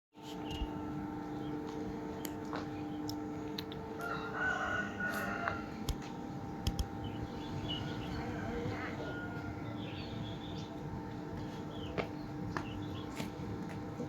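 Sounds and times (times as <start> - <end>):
steady hum: 0.2 - 14.0
rooster crowing: 4.0 - 5.8, 7.9 - 9.8
scattered clicks: 6.6 - 7.0.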